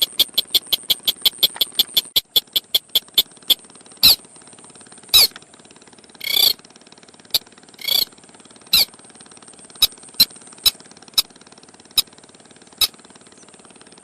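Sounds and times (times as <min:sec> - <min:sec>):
bird call notes: 0:00.0 - 0:04.2, 0:05.2 - 0:05.4, 0:06.2 - 0:06.6, 0:07.8 - 0:08.1.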